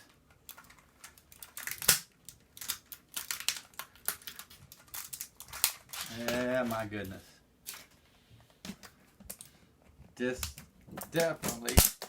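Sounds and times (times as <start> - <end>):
keyboard pieces snapping off: 1.4 - 2.0.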